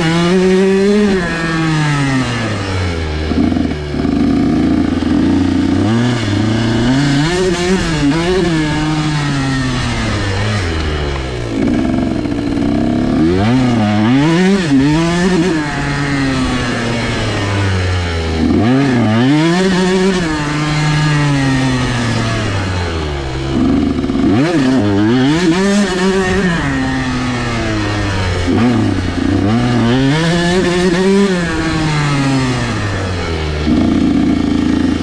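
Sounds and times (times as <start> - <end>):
two-stroke motorcycle engine revving: 0.0 - 35.0.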